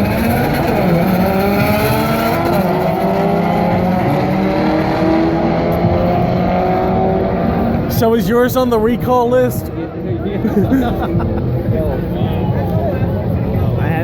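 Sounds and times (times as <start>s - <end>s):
drag-racing cars accelerating: 0.0s - 10.2s.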